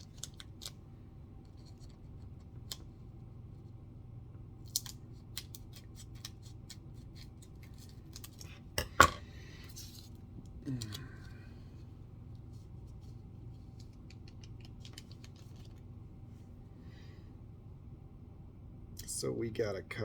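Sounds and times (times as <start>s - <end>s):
card pack wrapper crinkling: 0.0s - 0.8s, 13.7s - 15.8s.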